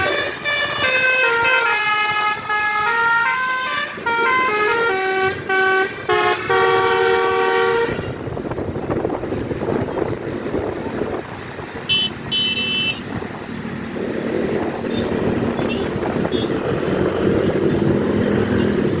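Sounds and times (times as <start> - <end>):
multi-tone bus horn: 0.0 - 8.3, 11.9 - 13.1, 14.9 - 16.6
traffic rumble: 0.0 - 19.0.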